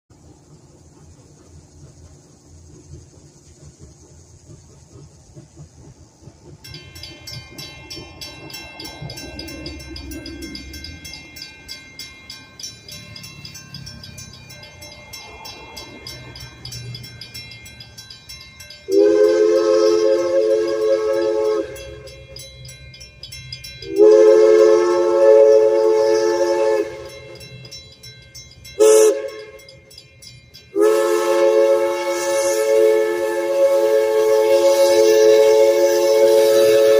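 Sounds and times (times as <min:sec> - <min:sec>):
low rumble of train: 0:00.0 - 0:36.9
music with chiming bell-like notes: 0:06.6 - 0:19.0, 0:21.8 - 0:24.0, 0:27.0 - 0:30.8.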